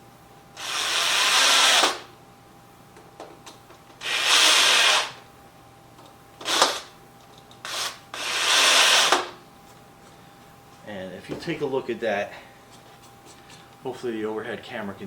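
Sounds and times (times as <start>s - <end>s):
drill driving screws: 0.6s - 2.1s, 4.0s - 5.2s, 6.4s - 6.9s, 7.6s - 9.4s.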